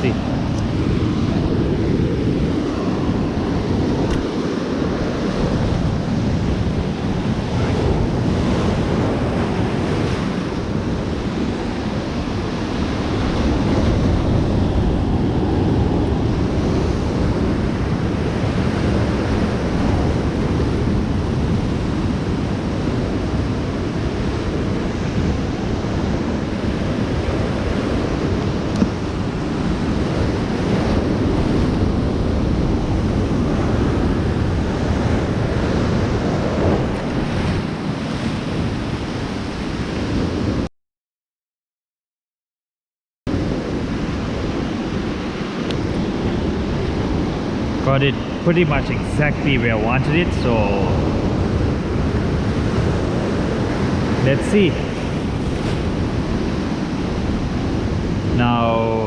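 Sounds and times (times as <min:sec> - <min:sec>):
surf breaking on beach: 0:00.0 - 0:40.6, 0:43.3 - 0:59.0
wind buffeting microphone: 0:00.0 - 0:40.7, 0:43.3 - 0:58.4.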